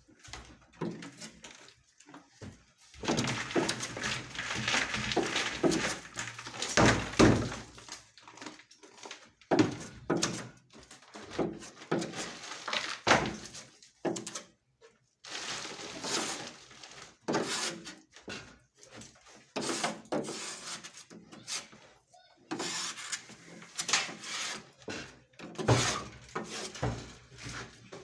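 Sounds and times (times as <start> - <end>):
knocks and thuds on ceiling: 2.3 - 7.9, 9.5 - 12.2, 24.9 - 28.0.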